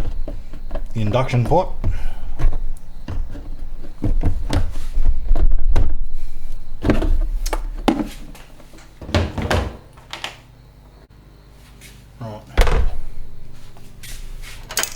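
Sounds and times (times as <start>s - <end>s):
clunks and knocks of engine parts: 0.0s - 10.4s, 12.6s - 14.9s.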